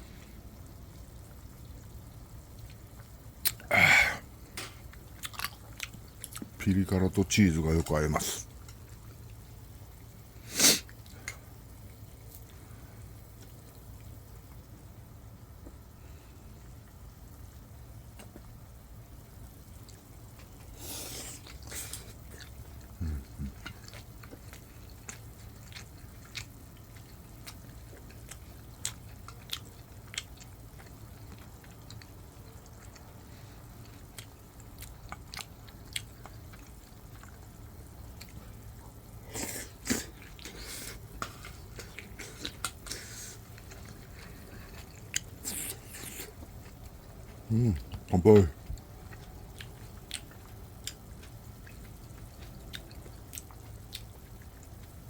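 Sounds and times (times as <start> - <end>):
low steady hum: 0.0 - 55.0
quiet chewing: 4.5 - 6.7, 10.8 - 14.8, 19.7 - 55.0.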